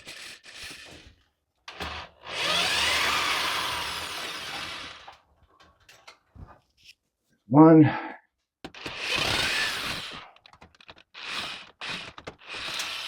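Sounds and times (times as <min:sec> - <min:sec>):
power drill running: 0:00.0 - 0:01.1, 0:01.7 - 0:05.2, 0:08.7 - 0:13.0.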